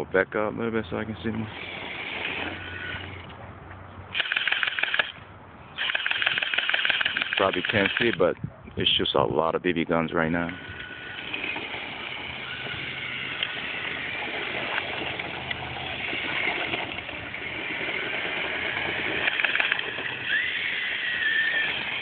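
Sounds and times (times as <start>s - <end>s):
electric motors whirring: 1.1s - 3.4s, 4.2s - 5.2s, 5.8s - 8.2s, 10.2s - 22.0s
sharp clicks of gun firing: 4.1s - 5.2s, 5.8s - 8.3s, 19.2s - 19.9s.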